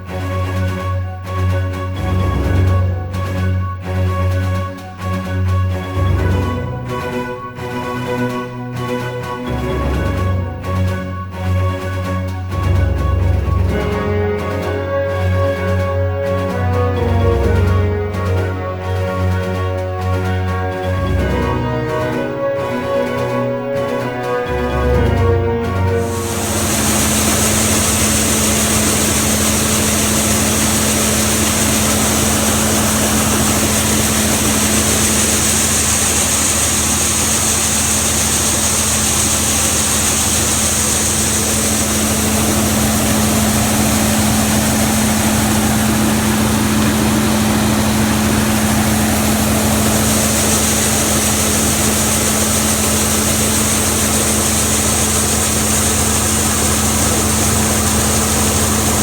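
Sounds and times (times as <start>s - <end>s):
diesel engine droning: 0.0s - 59.0s
high whine: 25.6s - 59.0s.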